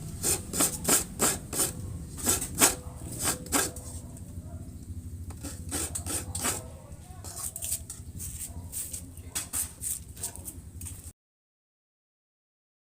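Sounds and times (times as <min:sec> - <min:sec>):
coconut grater scraping: 0:00.0 - 0:04.1, 0:05.2 - 0:11.1.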